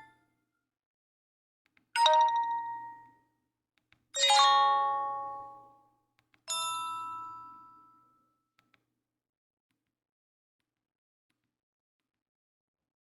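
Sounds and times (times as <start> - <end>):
phone chime tones: 2.0 - 3.0.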